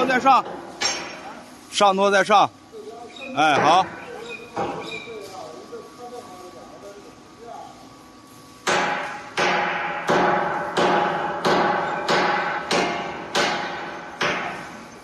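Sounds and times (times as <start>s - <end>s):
hammer striking steel plate: 8.6s - 14.8s.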